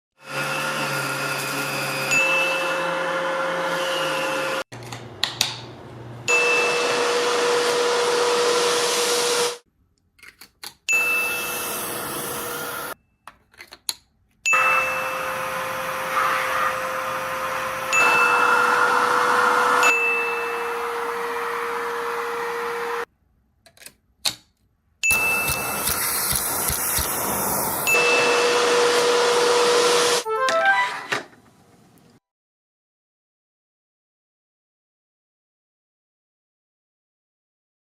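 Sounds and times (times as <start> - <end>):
vacuum cleaner motor whining: 0.2 - 4.6, 6.3 - 9.6, 11.0 - 13.0, 14.5 - 23.1, 25.1 - 30.2
short high tone: 30.2 - 31.1.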